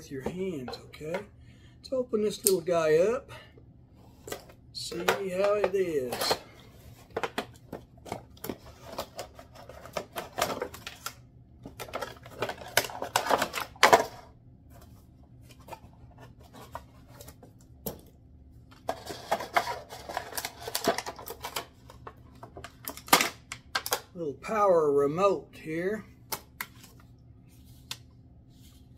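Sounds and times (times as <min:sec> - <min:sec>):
packaging rustling and crinkling: 0:18.8 - 0:23.2.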